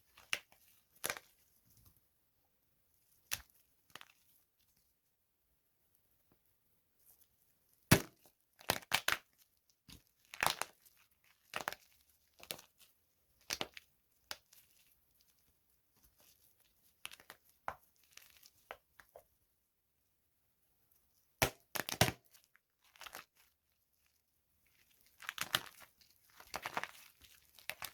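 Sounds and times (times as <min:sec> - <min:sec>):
dry soap crunching: 0:00.0 - 0:01.4, 0:07.9 - 0:19.2, 0:21.4 - 0:27.9.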